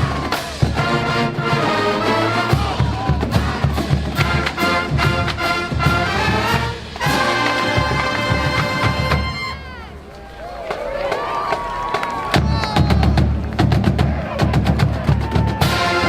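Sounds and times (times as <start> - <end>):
marching drum beats: 0.0 - 10.0, 10.6 - 16.0
brass holding chords: 0.3 - 9.8, 15.7 - 16.0.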